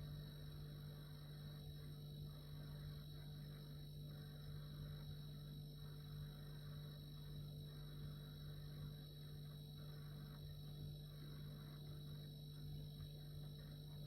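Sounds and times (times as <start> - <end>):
faint high whine: 0.0 - 14.0
refrigerator hum: 0.0 - 14.0.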